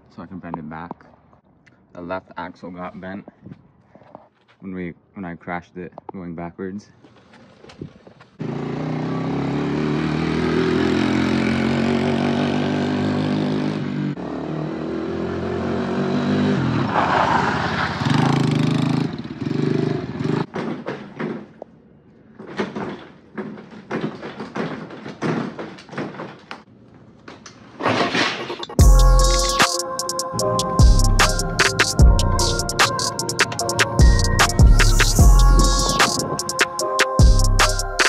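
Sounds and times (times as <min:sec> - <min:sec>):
small engine revving: 0:08.4 - 0:20.5.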